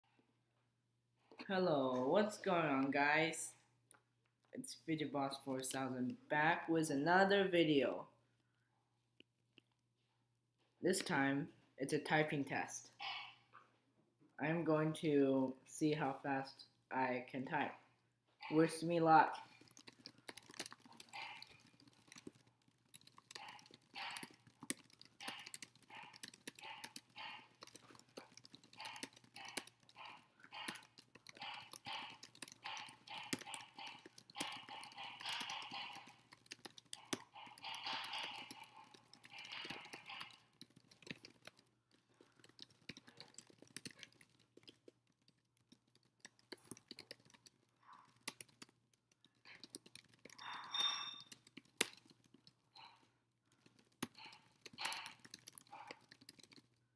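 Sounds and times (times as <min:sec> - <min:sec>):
fast keyboard typing: 0:18.4 - 0:56.8.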